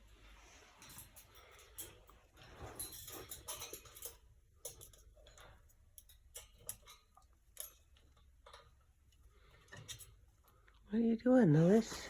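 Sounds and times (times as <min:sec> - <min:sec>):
soft rustling: 0:00.0 - 0:04.1.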